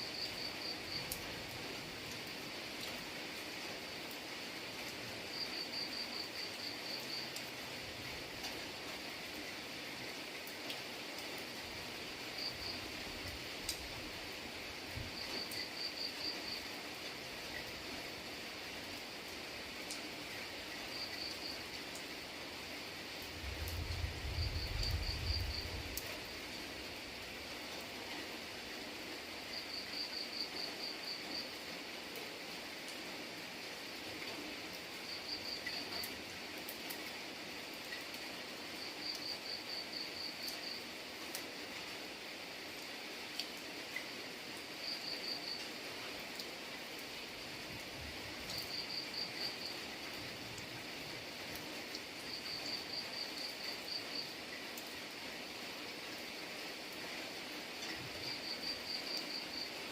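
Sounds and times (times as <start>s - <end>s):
rain hissing: 0.0s - 59.9s
water drip ticks: 13.2s - 13.8s, 43.3s - 44.1s
insect chirping trill: 23.4s - 25.9s.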